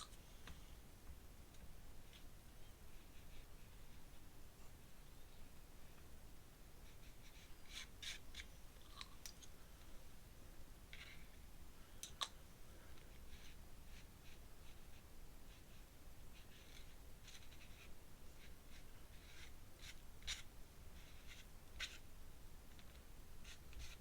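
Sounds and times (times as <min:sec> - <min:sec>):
paintbrush strokes on paper: 0:12.8 - 0:22.1, 0:22.8 - 0:24.0.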